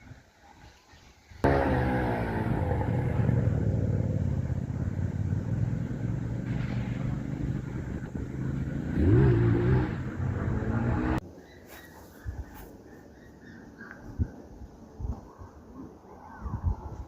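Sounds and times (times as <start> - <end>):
engine revving: 1.4 - 11.2
vehicle engine running: 1.4 - 11.2.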